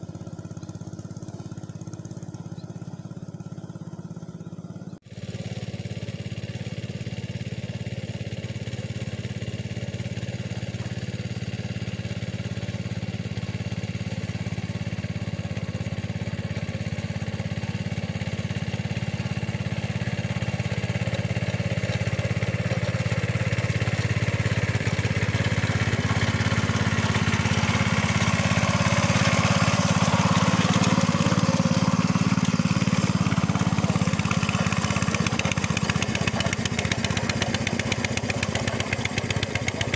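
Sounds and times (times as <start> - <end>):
hand tractor engine running: 10.4 - 39.9.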